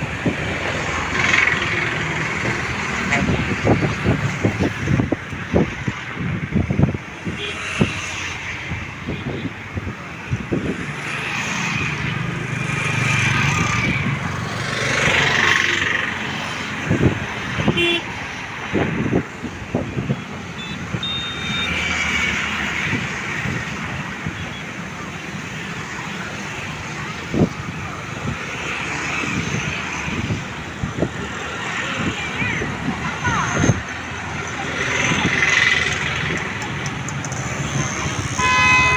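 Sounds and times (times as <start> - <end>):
road traffic passing: 0.0 - 38.9
horn toots: 38.4 - 38.9.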